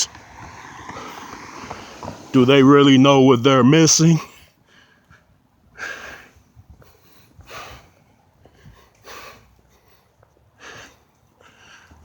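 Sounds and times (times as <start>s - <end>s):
man breathing heavily: 4.3s - 12.0s.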